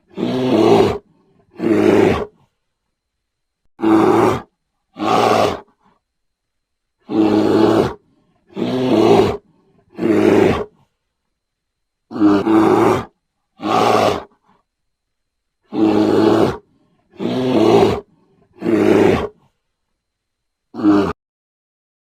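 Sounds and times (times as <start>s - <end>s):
bear roaring: 0.0s - 2.5s, 3.8s - 5.9s, 7.0s - 10.9s, 12.1s - 14.6s, 15.6s - 19.5s, 20.7s - 21.2s.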